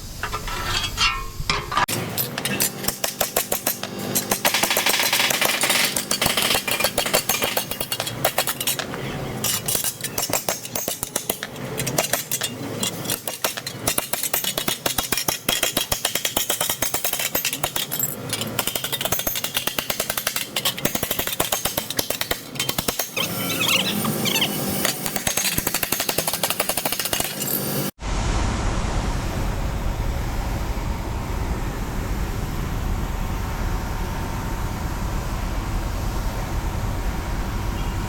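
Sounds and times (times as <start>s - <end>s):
power tool hammering rapidly: 1.9s - 27.8s.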